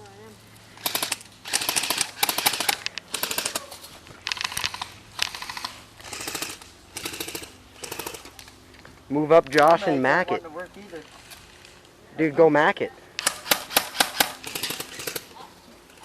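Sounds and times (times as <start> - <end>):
rapid ratcheting clicks: 4.2 - 8.4.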